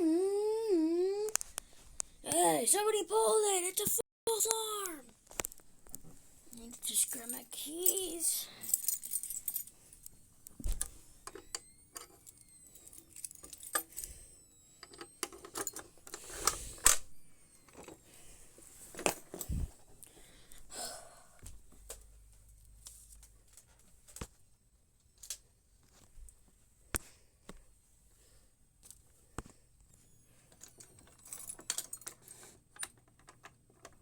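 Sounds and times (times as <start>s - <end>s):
keys jangling and clicking: 7.0s - 10.2s, 30.6s - 33.4s.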